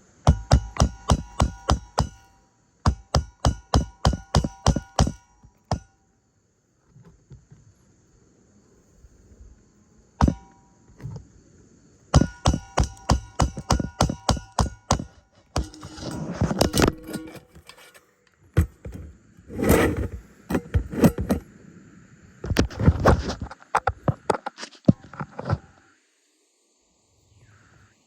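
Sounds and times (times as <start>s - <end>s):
hammer driving nails: 0.3s - 2.3s, 2.9s - 5.9s, 10.2s - 10.5s, 12.2s - 18.0s, 18.6s - 21.4s
rustling and scraping: 15.0s - 21.5s, 22.4s - 25.9s.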